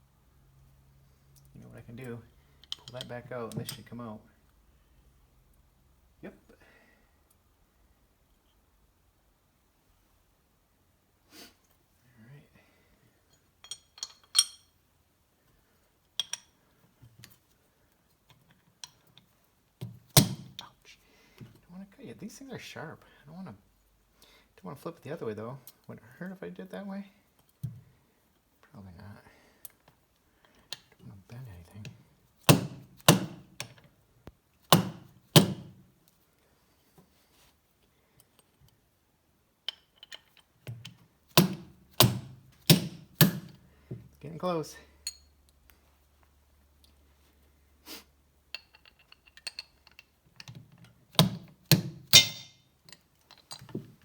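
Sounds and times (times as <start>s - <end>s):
metal engine parts clinking: 2.6s - 4.0s, 13.3s - 14.8s, 16.2s - 16.6s, 39.7s - 41.0s, 48.5s - 50.9s, 52.0s - 54.0s
hammer striking metal pin: 32.4s - 33.8s, 34.7s - 35.8s, 41.3s - 43.6s, 51.1s - 53.0s.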